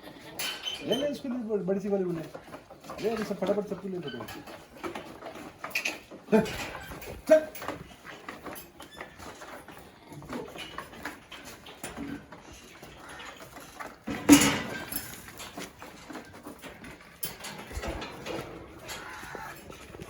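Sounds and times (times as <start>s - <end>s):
goat hooves tapping on floor: 1.2s - 20.0s
goat calling: 18.9s - 19.7s.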